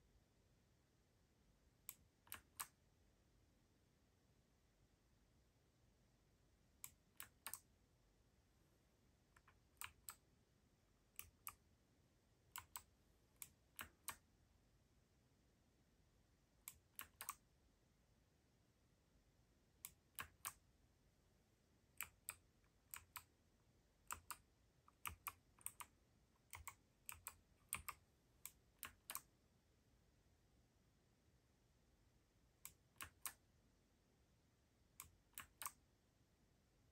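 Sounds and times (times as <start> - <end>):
mechanical keyboard key clicks: 16.9 - 17.4.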